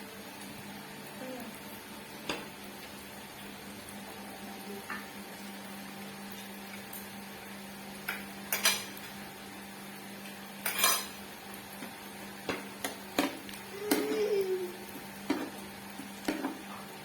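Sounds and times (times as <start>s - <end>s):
utensils clinking on plates: 8.1s - 9.0s, 10.6s - 11.2s.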